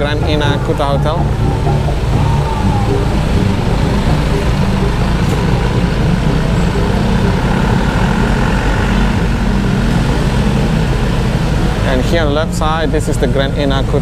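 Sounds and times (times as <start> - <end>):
drone of traffic: 0.0 - 14.0
motorbike engine running: 0.0 - 14.0.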